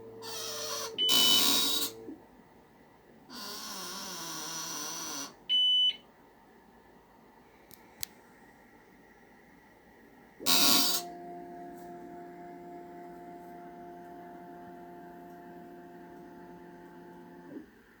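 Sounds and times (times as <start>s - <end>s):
electrical hum: 10.4s - 17.7s.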